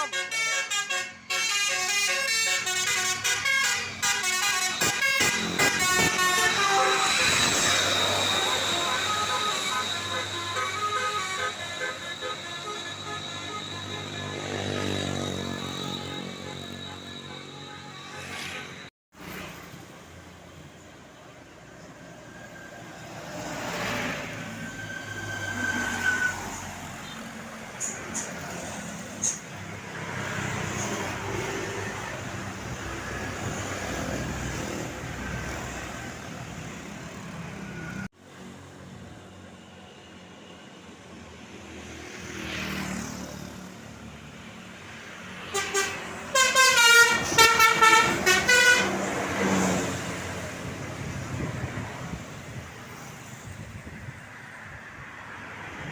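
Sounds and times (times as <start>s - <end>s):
bus horn tooting notes: 0.0s - 18.9s, 45.4s - 49.8s
steady high tone: 0.1s - 18.9s
road vehicle passing: 2.9s - 39.2s, 41.5s - 55.9s
vehicle passing: 41.8s - 44.2s.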